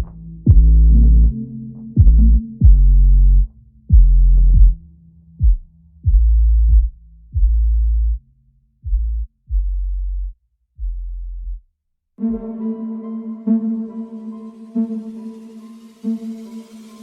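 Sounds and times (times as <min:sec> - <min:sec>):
electronic music with deep bass: 0:00.0 - 0:08.2.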